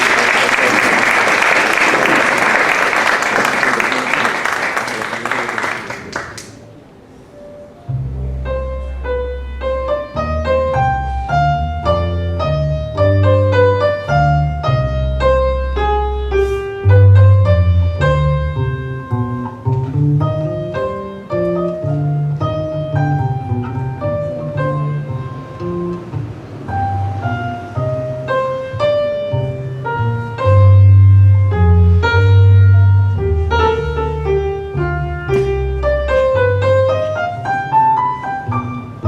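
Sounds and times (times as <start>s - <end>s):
low bass line: 7.9s - 28.2s, 28.8s - 37.4s.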